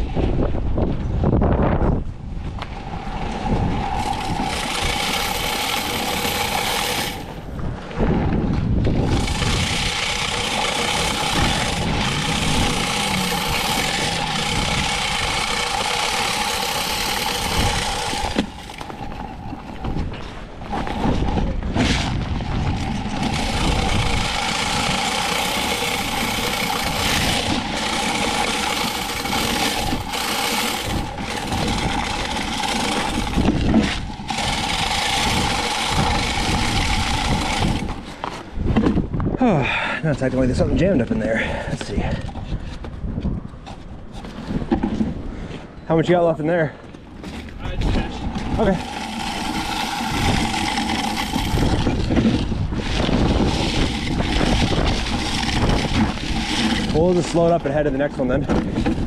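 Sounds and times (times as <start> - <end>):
vehicle noise: 0.0 - 59.0
wind: 0.0 - 59.0
salt spreader motor whine: 2.2 - 20.0, 20.6 - 38.4, 47.8 - 59.0.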